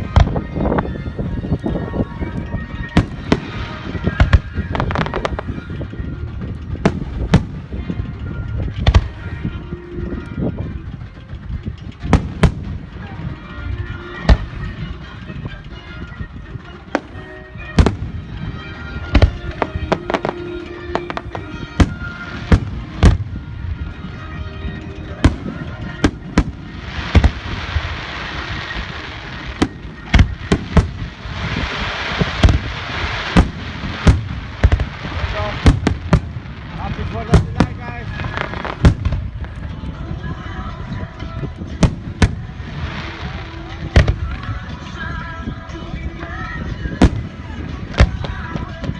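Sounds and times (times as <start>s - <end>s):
fireworks crackling: 0.0s - 48.9s
fireworks booming: 2.8s - 9.5s, 11.6s - 13.4s, 16.9s - 24.3s, 25.0s - 39.9s, 47.0s - 48.9s.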